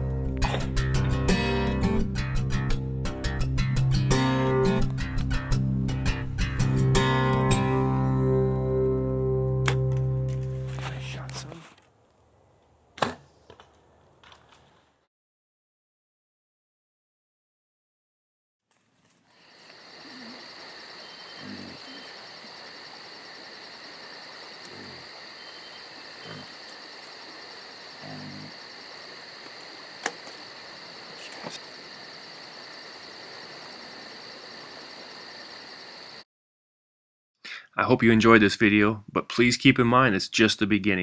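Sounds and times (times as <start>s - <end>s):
insects trilling: 19.3s - 36.2s.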